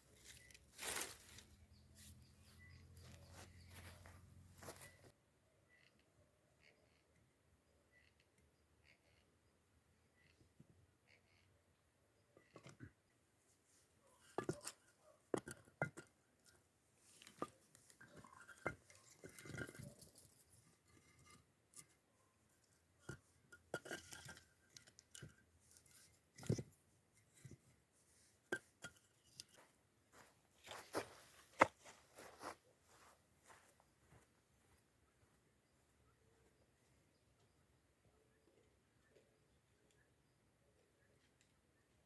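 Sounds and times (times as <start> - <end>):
soft rustling: 0.1 - 5.1, 25.6 - 35.4
small objects clicking and knocking: 14.2 - 21.9.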